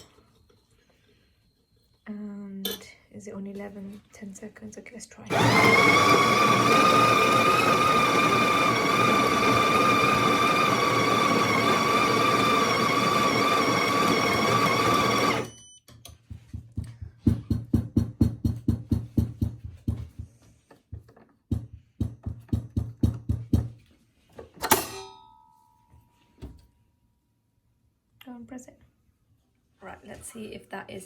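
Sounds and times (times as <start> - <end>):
coffee grinder whining: 5.3 - 15.5.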